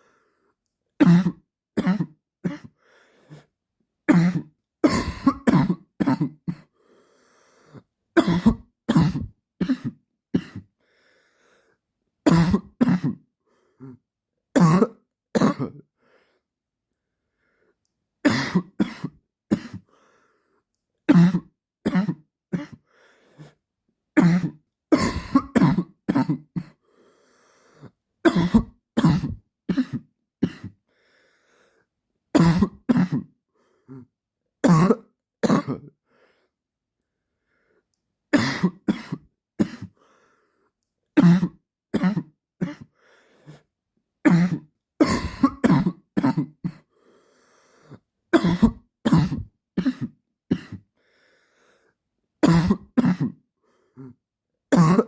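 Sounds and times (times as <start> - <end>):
man's dry cough: 1.0 - 2.8, 4.1 - 6.7, 8.2 - 10.7, 12.3 - 13.2, 14.6 - 15.8, 18.2 - 19.9, 21.1 - 22.8, 24.2 - 26.8, 28.3 - 30.8, 32.4 - 33.3, 34.6 - 35.9, 38.3 - 40.0, 41.2 - 42.9, 44.3 - 46.9, 48.4 - 50.9, 52.4 - 53.4, 54.7 - 55.0.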